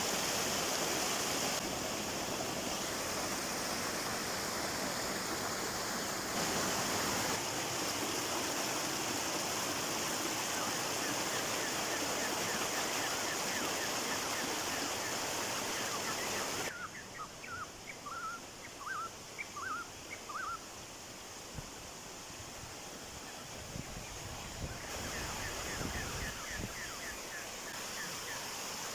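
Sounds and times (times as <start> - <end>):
waterfall rushing: 0.0 - 16.7.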